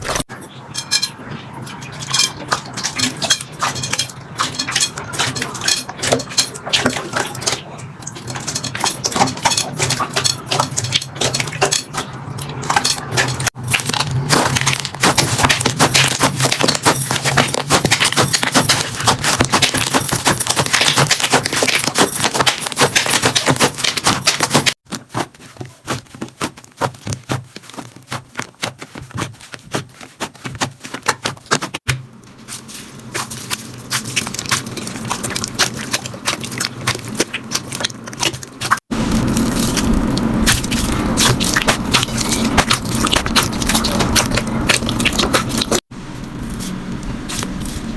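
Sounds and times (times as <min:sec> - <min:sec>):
slime crackling and popping: 0:33.2 - 0:45.8.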